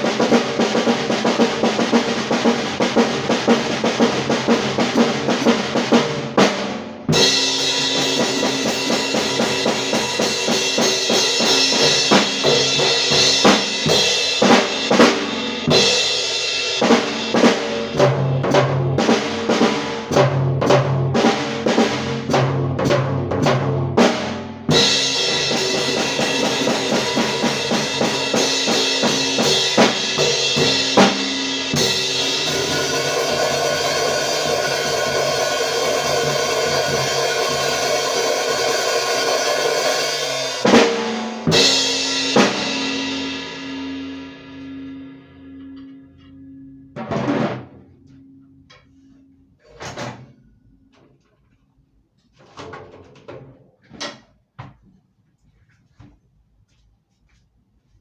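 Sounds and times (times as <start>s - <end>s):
kick and snare drum beat: 16.8s - 39.8s, 40.6s - 43.1s.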